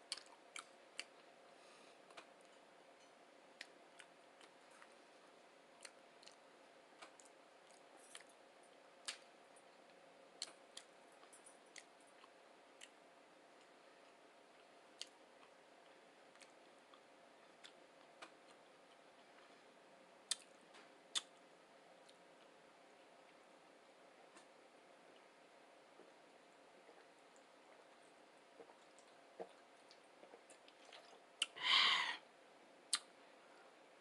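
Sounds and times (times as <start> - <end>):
faint steady hum: 0.0 - 34.0
mouth clicks of chewing: 20.3 - 20.5, 21.1 - 21.3, 32.9 - 33.1.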